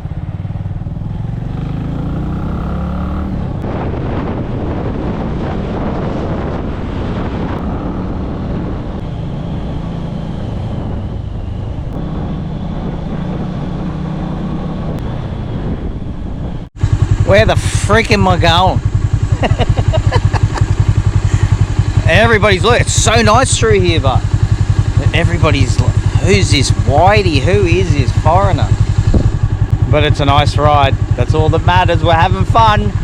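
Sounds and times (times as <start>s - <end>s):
motorbike engine running: 0.0s - 3.9s, 12.0s - 33.0s
wind noise on microphone: 3.1s - 17.2s, 18.2s - 33.0s.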